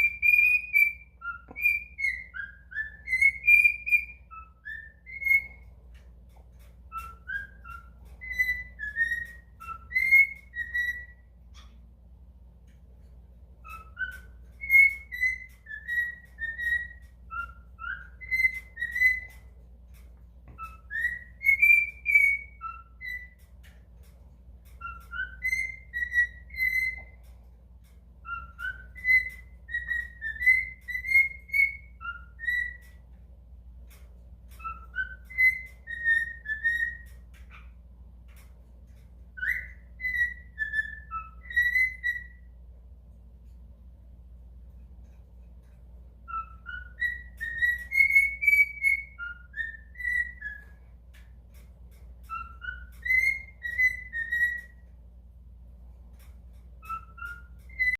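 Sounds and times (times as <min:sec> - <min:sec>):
cockatiel whistling: 0:00.0 - 0:05.7, 0:06.6 - 0:11.8, 0:13.6 - 0:19.5, 0:20.5 - 0:23.8, 0:24.7 - 0:27.2, 0:28.2 - 0:33.0, 0:33.9 - 0:37.7, 0:38.4 - 0:42.6, 0:46.2 - 0:51.3, 0:52.2 - 0:54.9, 0:56.8 - 0:57.9.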